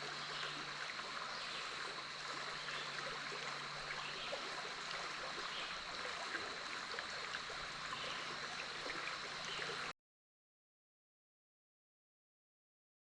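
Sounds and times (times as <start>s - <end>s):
river water babbling: 0.0s - 9.9s.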